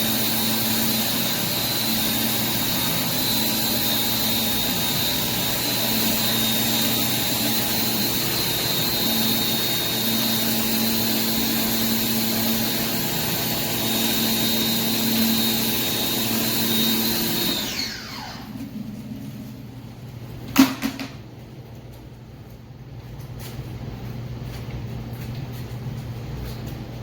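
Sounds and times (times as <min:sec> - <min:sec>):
pressure washer whine: 0:00.0 - 0:21.0.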